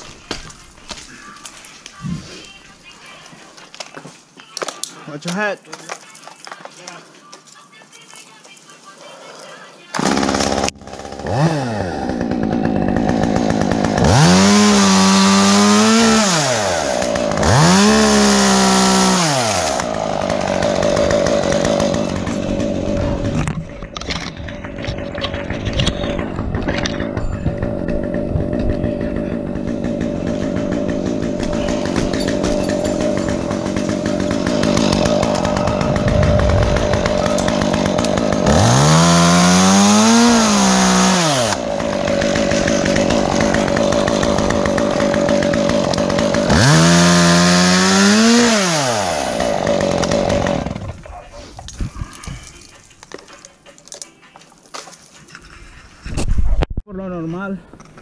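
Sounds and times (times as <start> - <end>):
chainsaw idling and revving: 9.9 - 23.6, 24.3 - 51.0.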